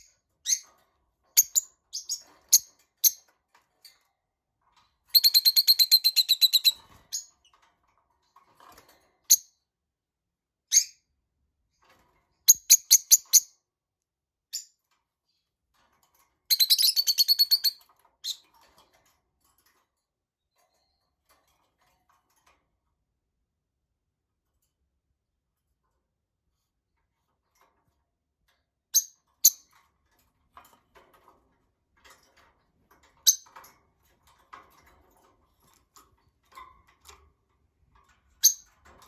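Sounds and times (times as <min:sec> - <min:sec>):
lovebirds chirping: 0:05.2 - 0:06.8
rapid chattering chirps: 0:05.2 - 0:06.8.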